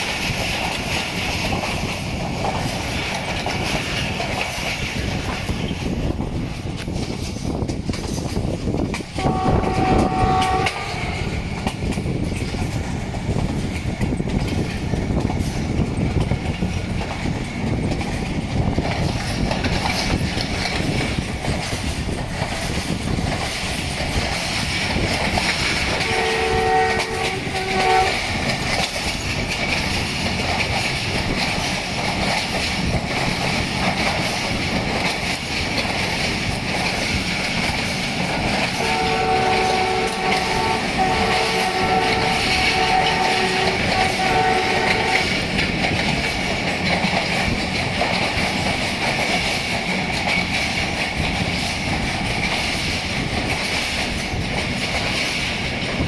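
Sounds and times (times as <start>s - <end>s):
train running on track: 0.0s - 56.0s
locomotive horn blasts: 9.2s - 11.6s, 25.9s - 28.4s, 38.8s - 45.4s.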